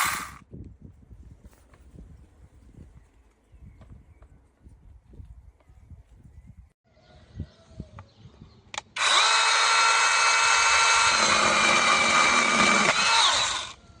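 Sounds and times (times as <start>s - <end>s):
mini chainsaw motor whine: 0.0s - 0.4s, 9.0s - 13.8s.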